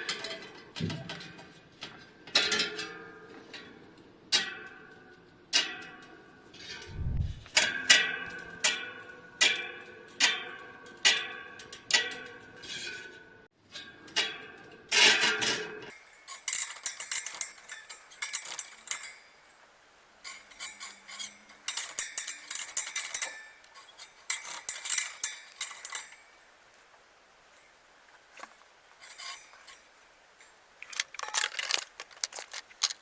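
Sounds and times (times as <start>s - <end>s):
metallic clinking of bicycle parts: 7.6s - 33.0s.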